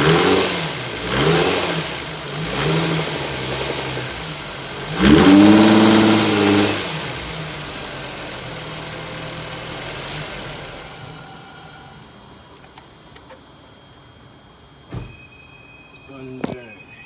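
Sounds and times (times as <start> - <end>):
car engine revving and idling: 0.0 - 12.2.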